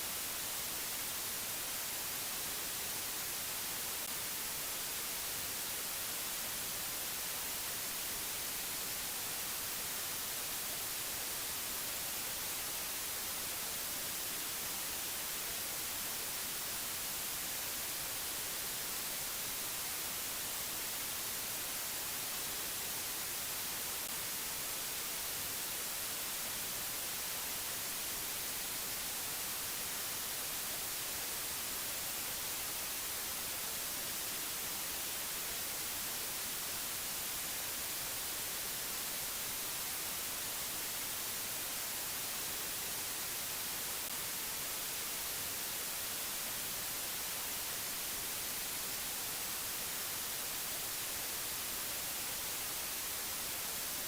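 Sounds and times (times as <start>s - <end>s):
steady white noise hiss: 0.0s - 54.0s.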